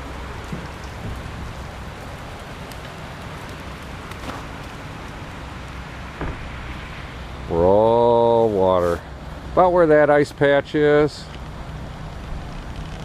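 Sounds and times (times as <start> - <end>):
meltwater dripping off ice: 0.0 - 6.9.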